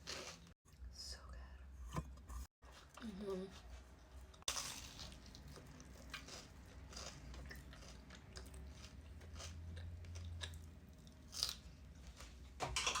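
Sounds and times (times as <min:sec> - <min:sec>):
crunchy bites and chewing: 0:04.5 - 0:10.6.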